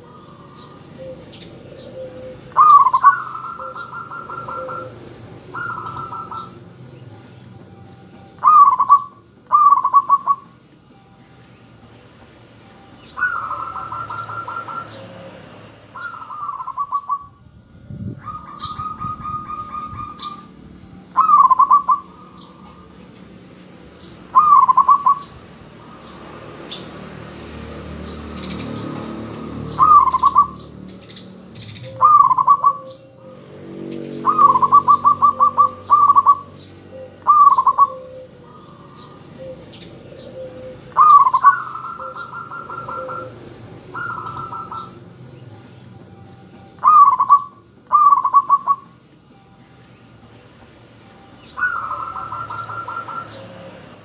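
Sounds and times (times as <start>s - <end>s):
dove cooing: 0.0s - 7.2s, 8.2s - 10.6s, 13.0s - 17.4s, 18.0s - 23.3s, 24.0s - 26.2s, 28.4s - 30.7s, 31.6s - 45.5s, 46.6s - 49.1s, 51.4s - 54.0s.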